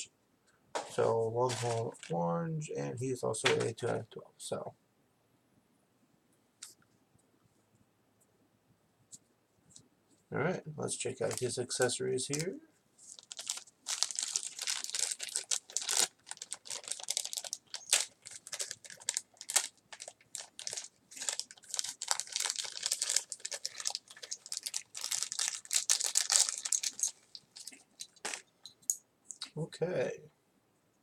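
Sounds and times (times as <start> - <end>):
plastic packaging crinkling: 1.5 - 2.2, 12.3 - 28.5
packaging tearing: 13.1 - 28.4.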